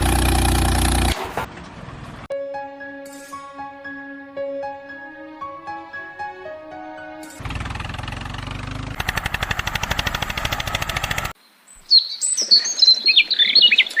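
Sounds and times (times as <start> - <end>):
engine chugging: 0.0 - 2.3, 7.4 - 11.4
birds chirping: 10.4 - 14.0.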